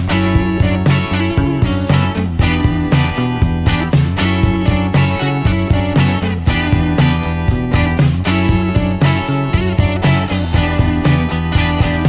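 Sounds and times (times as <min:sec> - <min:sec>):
upbeat guitar music: 0:00.0 - 0:12.0.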